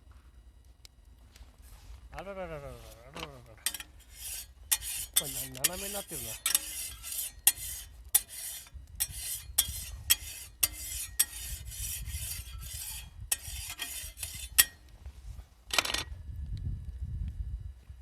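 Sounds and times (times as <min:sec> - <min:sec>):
metal utensil scraping: 0:02.7 - 0:14.8.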